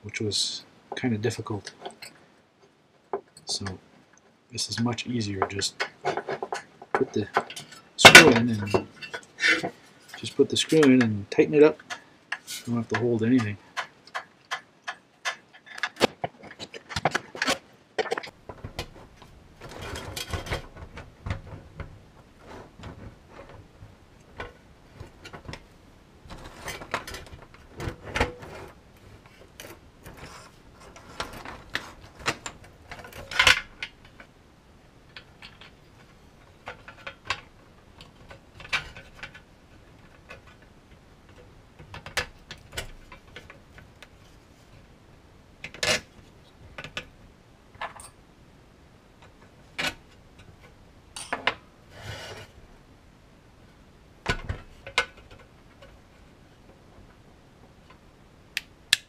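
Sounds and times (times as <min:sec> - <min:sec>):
small parts clicking and rattling: 0:03.2 - 0:21.6.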